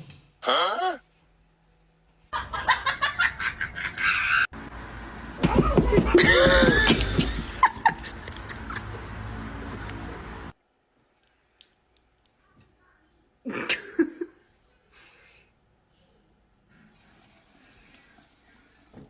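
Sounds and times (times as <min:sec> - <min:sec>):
laughter in rapid bursts: 0:02.3 - 0:04.5, 0:05.4 - 0:09.0, 0:13.5 - 0:14.4.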